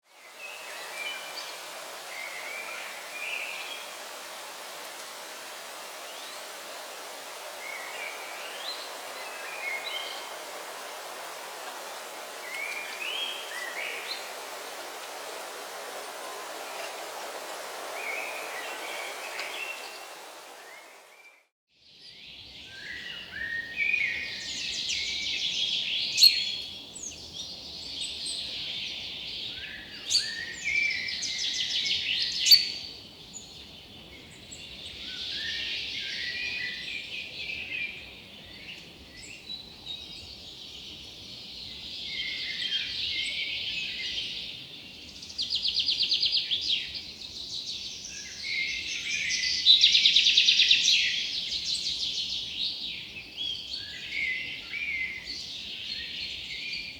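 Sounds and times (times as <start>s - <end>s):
songbirds chirping: 0.0s - 21.4s.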